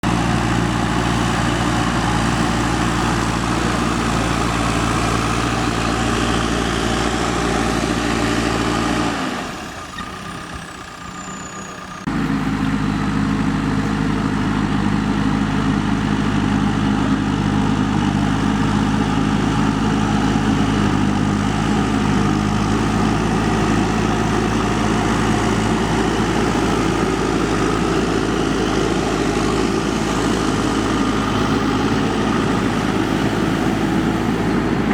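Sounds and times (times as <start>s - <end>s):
backhoe diesel engine running: 0.0s - 34.9s.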